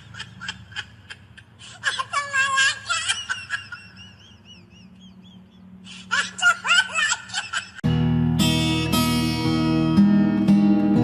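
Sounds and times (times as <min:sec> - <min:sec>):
high-pitched laughter: 0:00.0 - 0:07.8
high chirps: 0:03.9 - 0:06.0
acoustic guitar music: 0:07.8 - 0:11.0.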